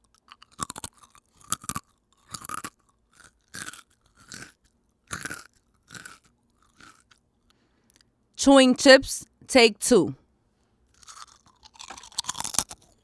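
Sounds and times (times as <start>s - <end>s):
person chewing potato chips: 0.0s - 7.2s, 10.9s - 13.0s.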